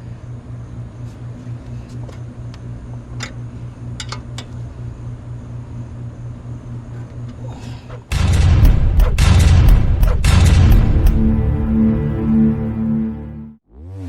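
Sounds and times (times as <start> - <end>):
machine humming: 8.0 - 13.6.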